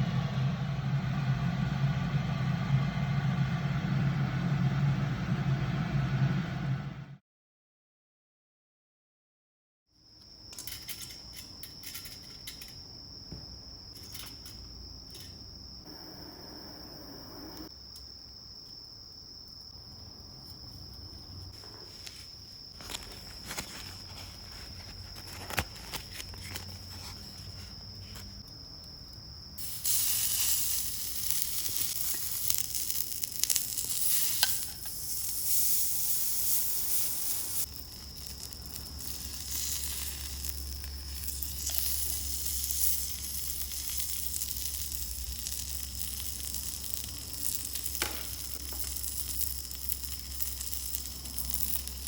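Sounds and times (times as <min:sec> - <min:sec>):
insects chirping: 0:10.0 - 0:52.0
food sizzling on a grill plate: 0:29.6 - 0:52.0.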